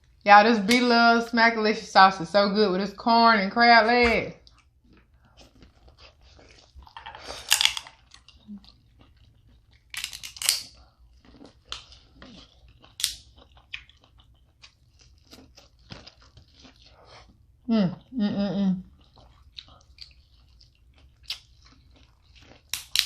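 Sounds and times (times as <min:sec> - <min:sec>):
chewing and crunching: 0:04.4 - 0:18.1, 0:18.9 - 0:23.0
crab shell cracks and clicks: 0:07.5 - 0:08.3, 0:09.8 - 0:10.8, 0:13.0 - 0:13.9, 0:22.6 - 0:23.0.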